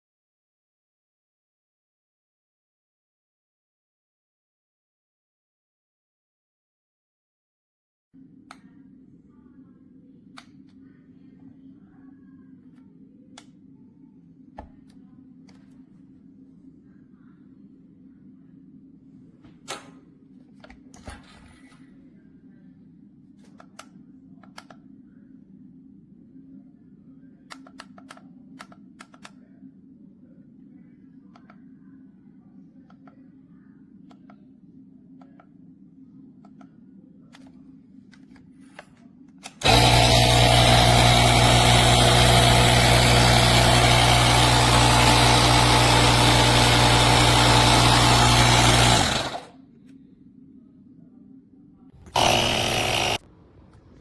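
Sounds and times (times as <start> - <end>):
tire inflator compressor running: 39.6 - 49.5, 52.0 - 54.0
low hum: 39.6 - 54.0.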